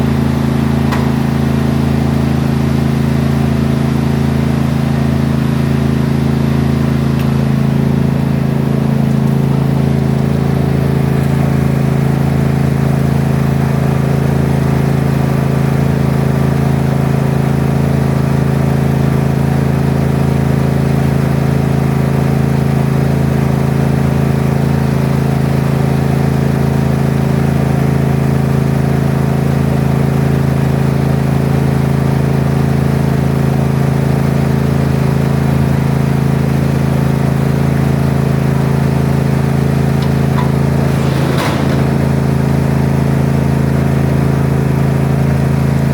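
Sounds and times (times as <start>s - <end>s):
lawn mower engine running: 0.0s - 15.4s, 36.2s - 45.9s.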